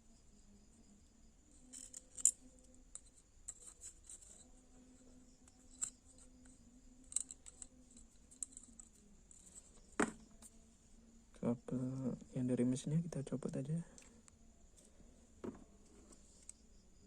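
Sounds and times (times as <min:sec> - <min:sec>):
faint steady hum: 0:00.0 - 0:17.0
small parts clicking and scratching: 0:01.5 - 0:10.6, 0:15.8 - 0:16.7.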